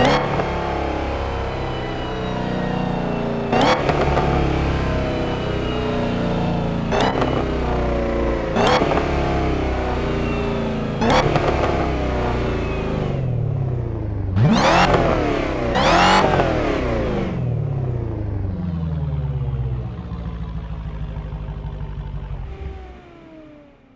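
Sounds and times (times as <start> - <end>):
car engine revving: 0.0 - 23.9
exhaust cracks: 6.8 - 12.9.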